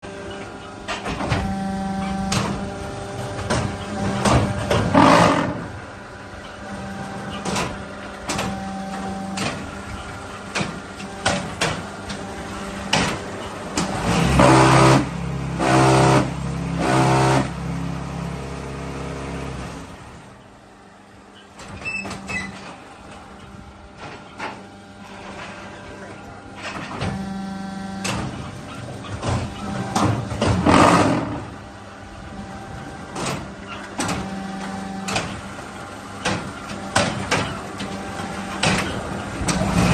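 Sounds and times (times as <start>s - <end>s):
concrete block machine humming: 0.0s - 39.9s
machine clanks and knocks: 0.3s - 17.1s, 21.4s - 27.3s, 28.0s - 31.6s, 32.6s - 39.9s
loud low buzz: 1.0s - 7.3s, 8.2s - 10.0s, 10.9s - 20.4s, 26.8s - 28.5s, 29.8s - 33.0s.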